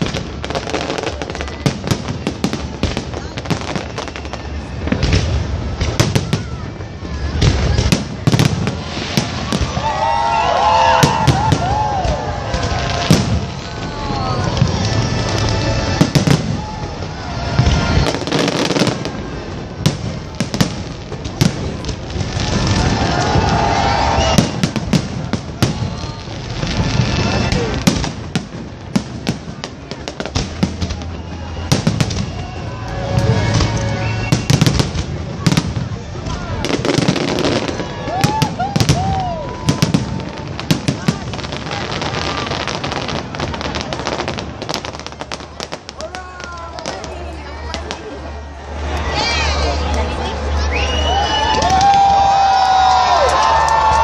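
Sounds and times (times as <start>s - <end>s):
fireworks bangs and crackling: 0.0s - 54.0s
fireworks rumble and clatter: 0.0s - 54.0s.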